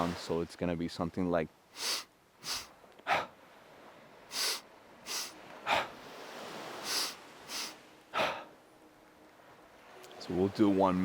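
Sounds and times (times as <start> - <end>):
person inhaling and exhaling: 1.8 - 3.3, 4.3 - 5.9, 6.8 - 8.5.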